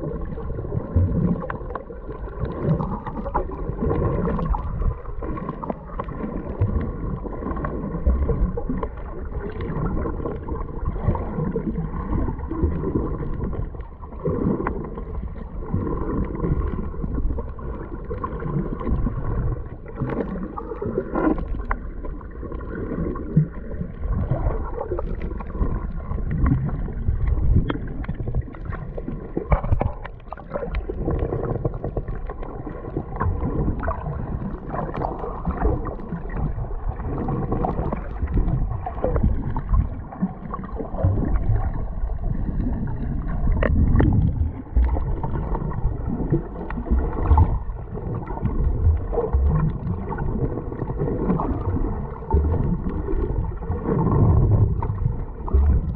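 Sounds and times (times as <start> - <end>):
water gurgling and sloshing: 0.0 - 55.9
low rumble: 35.3 - 55.9.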